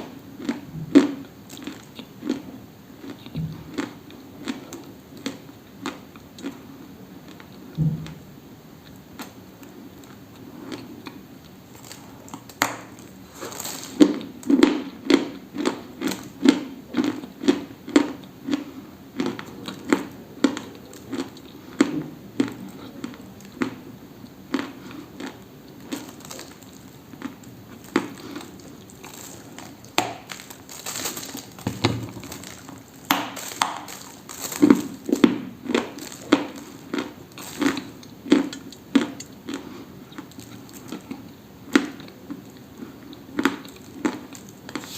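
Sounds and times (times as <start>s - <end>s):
dry crisp crunching: 11.7s - 14.5s, 24.9s - 38.8s, 43.4s - 44.9s.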